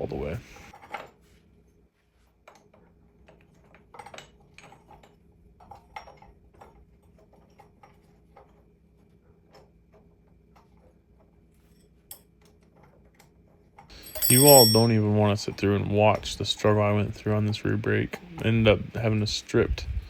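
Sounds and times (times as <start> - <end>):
low steady hum: 13.9 - 20.0.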